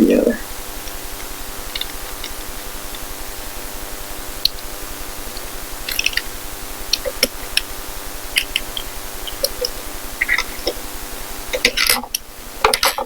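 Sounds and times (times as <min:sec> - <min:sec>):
metal lock parts clicking: 0:11.6 - 0:13.0.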